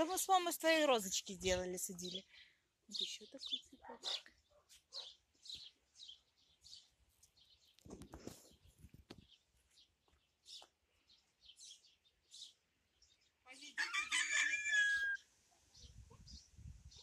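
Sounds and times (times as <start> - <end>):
small birds chirping: 0.0 - 17.0
rooster crowing: 13.8 - 15.2.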